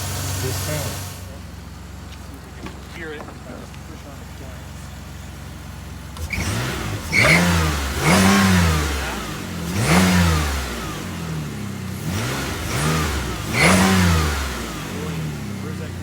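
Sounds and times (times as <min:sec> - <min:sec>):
car engine revving: 0:00.0 - 0:16.0
belt squeal on acceleration: 0:06.2 - 0:08.8.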